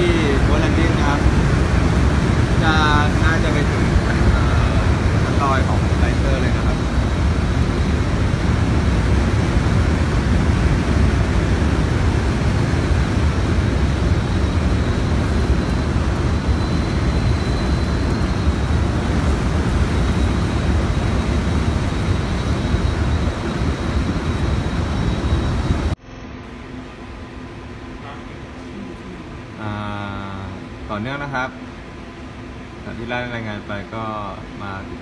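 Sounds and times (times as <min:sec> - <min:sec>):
strong wind across microphone: 0:00.0 - 0:26.0.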